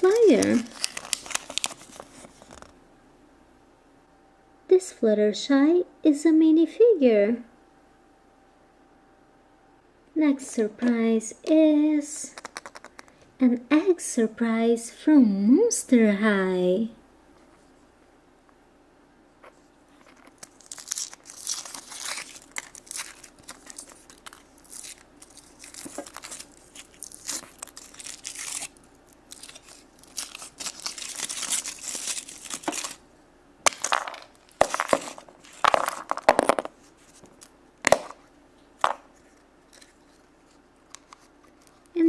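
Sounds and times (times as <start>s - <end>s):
wrapper tearing and crumpling: 0.0s - 2.7s, 20.0s - 33.0s, 33.7s - 36.4s.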